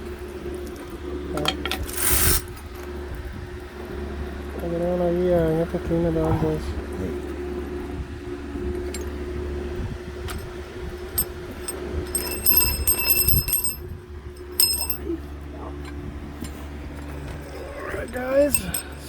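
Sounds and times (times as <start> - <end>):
steady low hum: 0.0 - 19.0
metallic clicks of tools: 1.4 - 2.4.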